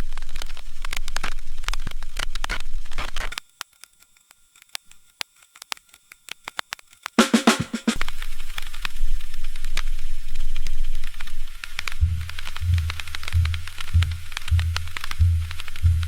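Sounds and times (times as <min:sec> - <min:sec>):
low hum: 0:12.0 - 0:16.0.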